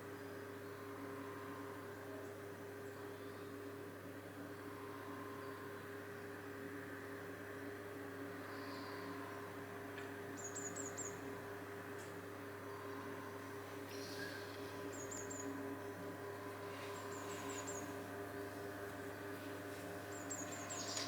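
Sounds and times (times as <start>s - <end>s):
steady low hum: 0.2s - 21.0s
small bird chirping: 20.1s - 21.0s.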